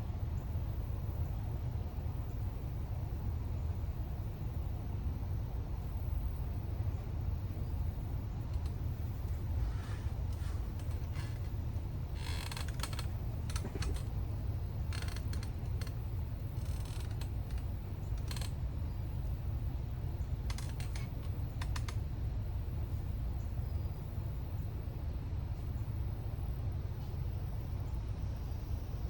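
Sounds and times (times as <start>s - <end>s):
fishing gear clicking and rattling: 10.1s - 16.0s, 16.6s - 18.5s.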